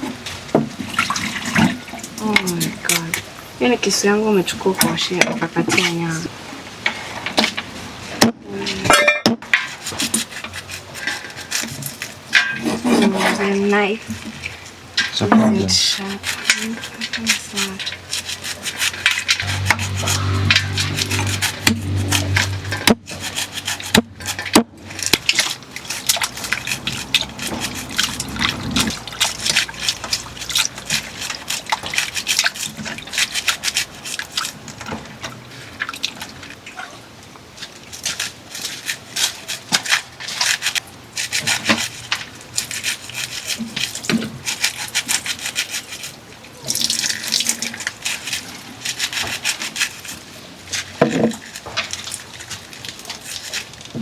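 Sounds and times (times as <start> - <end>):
knife blade scraping: 16.2 - 34.6.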